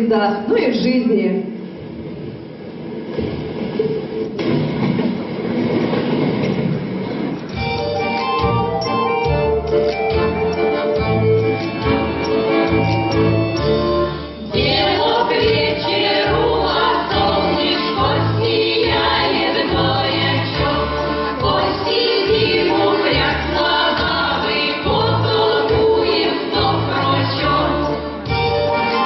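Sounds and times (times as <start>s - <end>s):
folk ensemble music: 7.4s - 29.0s
choir singing: 14.4s - 29.0s.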